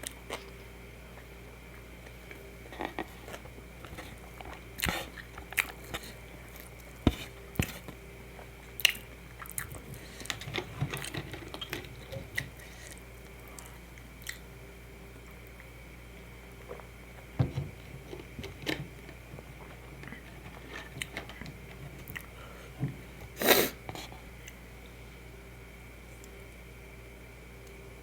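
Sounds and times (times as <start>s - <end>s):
chewing with wet mouth clicks: 4.2s - 7.0s, 7.6s - 10.3s, 12.6s - 14.4s.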